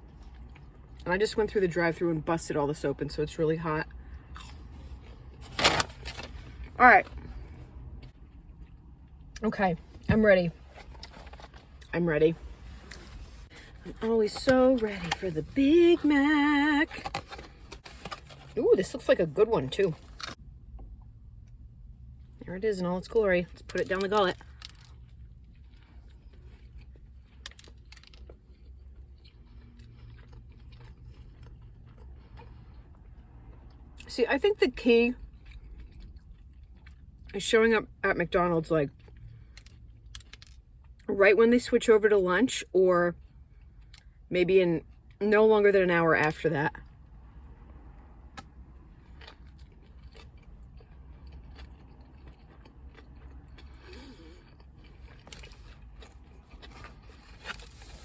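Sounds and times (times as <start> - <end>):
low steady hum: 0.0 - 58.0
person chewing food: 4.2 - 5.4, 24.4 - 34.0, 48.3 - 58.0.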